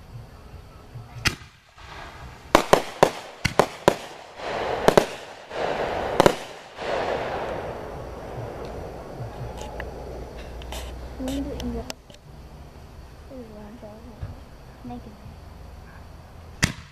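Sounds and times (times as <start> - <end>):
crackling hiss: 0.0 - 16.9
fireworks bangs: 1.0 - 13.2, 16.6 - 16.9.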